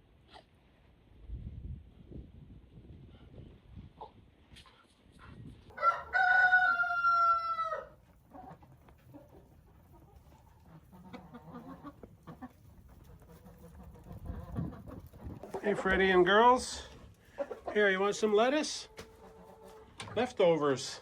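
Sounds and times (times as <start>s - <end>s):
rooster crowing: 5.7s - 8.0s
hen clucking: 5.8s - 20.3s.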